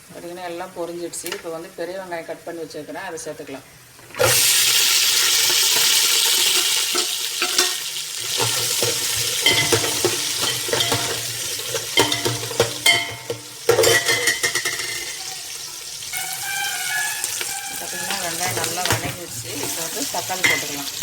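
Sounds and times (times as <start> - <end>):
onions sizzling in hot oil: 0.0 - 21.0
spoon scraping and clinking pan: 5.4 - 15.3, 16.1 - 21.0.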